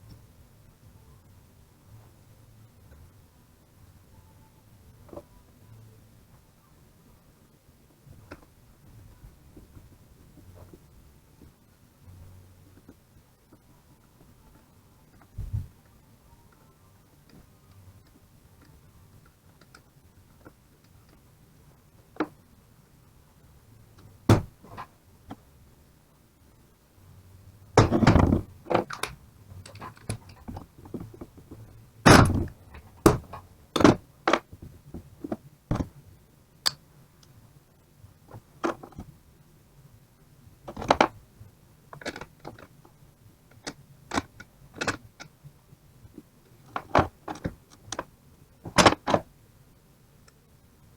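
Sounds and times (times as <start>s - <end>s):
tools and metal parts clunking: 27.8s - 34.5s, 46.7s - 48.0s, 48.7s - 49.2s.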